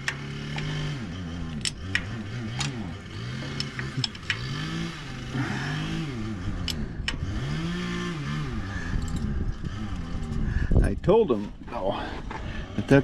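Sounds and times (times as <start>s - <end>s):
chainsaw engine revving: 0.0s - 10.7s.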